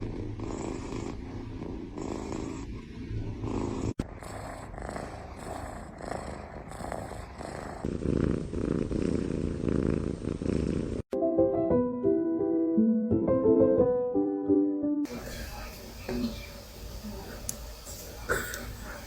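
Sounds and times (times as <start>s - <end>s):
cat purring: 0.0s - 11.1s.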